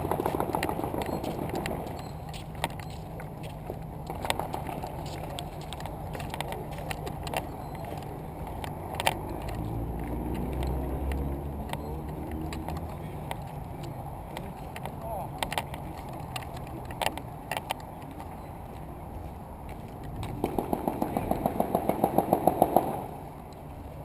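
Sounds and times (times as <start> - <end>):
vehicle engine drone: 0.0 - 24.0
distant gunfire: 20.4 - 23.0.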